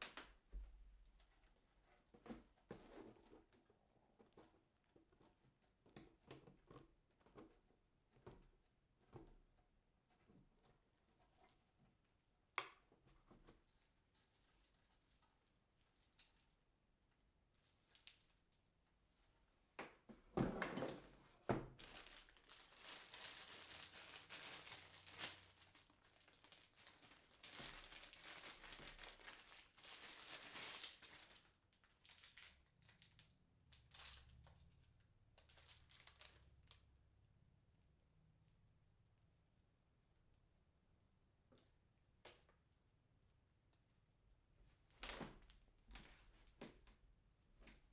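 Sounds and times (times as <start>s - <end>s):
plastic packaging crinkling: 21.7s - 34.6s, 35.4s - 36.8s.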